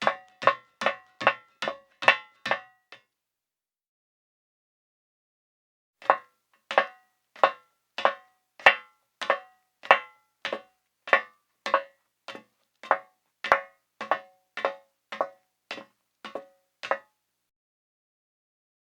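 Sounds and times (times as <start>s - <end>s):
heels clicking while walking: 0.0s - 2.8s, 6.0s - 17.1s.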